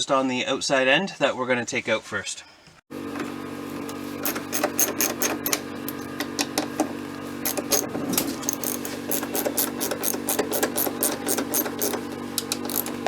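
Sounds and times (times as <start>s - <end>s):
ratchet wrench clicking: 4.2s - 6.1s, 7.4s - 13.0s.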